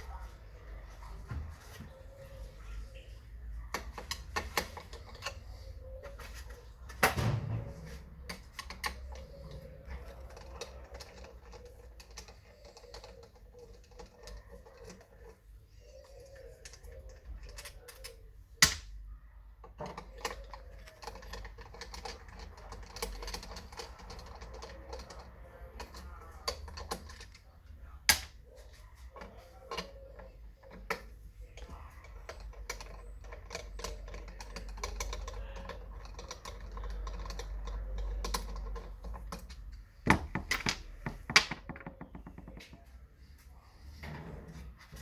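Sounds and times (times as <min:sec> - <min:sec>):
engine clicking rattle: 0:19.7 - 0:42.7.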